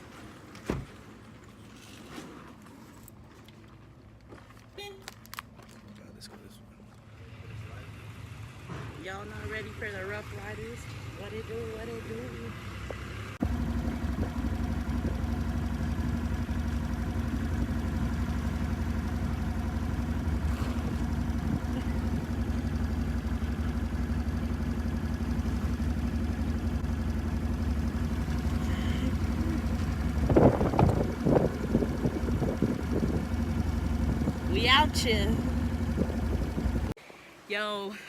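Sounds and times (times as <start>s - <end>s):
atv engine running: 7.7s - 37.0s.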